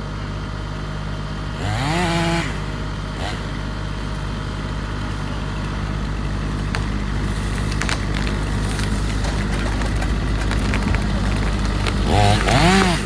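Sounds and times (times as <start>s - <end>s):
engine running at low speed: 0.0s - 13.0s
sharp snaps and cracks: 6.0s - 13.0s.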